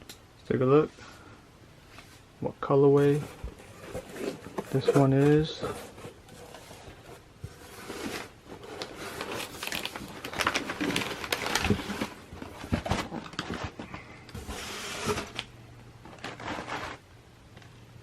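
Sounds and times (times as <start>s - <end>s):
cardboard box rustling: 3.0s - 17.0s.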